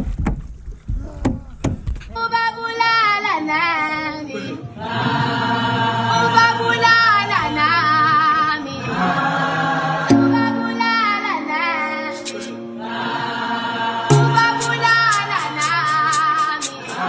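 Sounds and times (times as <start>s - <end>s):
choir singing over low note: 4.3s - 17.0s.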